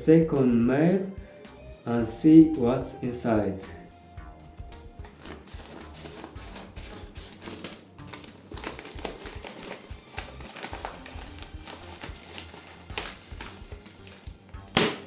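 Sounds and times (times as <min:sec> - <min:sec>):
quiet background music: 0:00.0 - 0:15.0
package rustling and tearing: 0:05.0 - 0:15.0.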